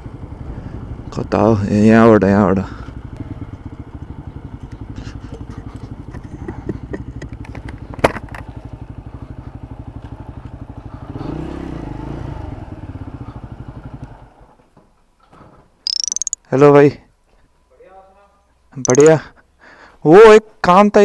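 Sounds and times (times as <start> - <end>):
motorcycle engine running: 0.0 - 14.4
sharp click: 15.9 - 16.4, 18.9 - 19.2.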